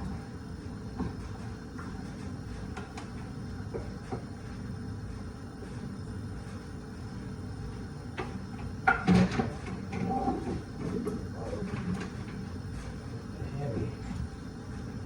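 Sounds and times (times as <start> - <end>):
steady low hum: 0.0 - 15.0
kitchen clatter and knocks: 8.8 - 12.4.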